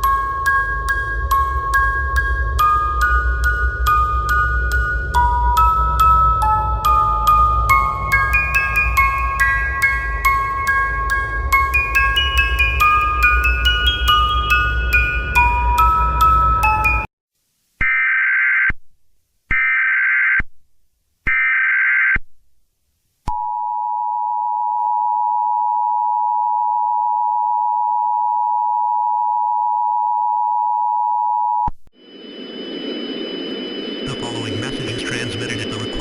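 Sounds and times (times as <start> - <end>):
two-tone attention signal: 33.5 - 36.0.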